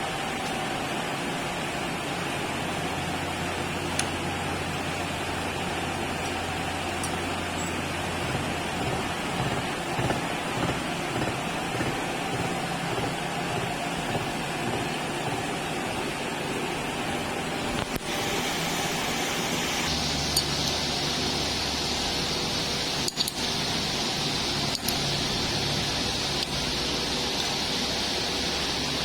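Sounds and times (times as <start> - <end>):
faint hum: 0.0 - 29.0
milling machine running: 3.5 - 29.0.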